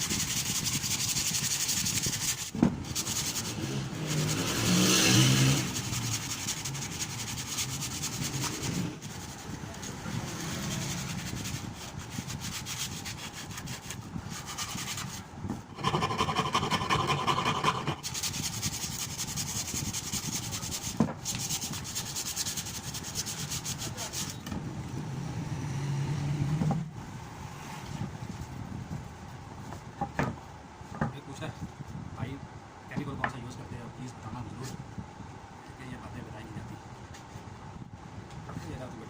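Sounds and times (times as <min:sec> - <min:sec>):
sandpaper rubbing on wood: 0:00.0 - 0:15.2, 0:15.8 - 0:24.4.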